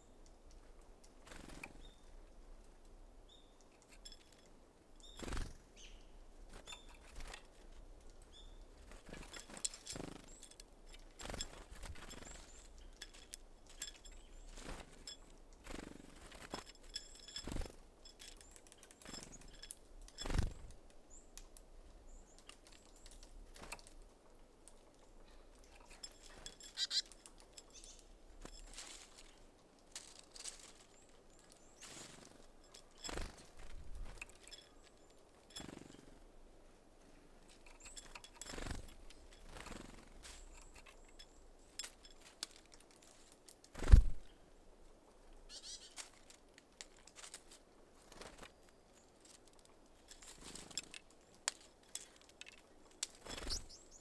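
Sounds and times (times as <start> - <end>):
bird wing flutters and knocks: 5.1 - 5.6, 8.7 - 20.8, 28.4 - 36.2, 37.5 - 44.4, 45.9 - 48.6, 49.2 - 53.8.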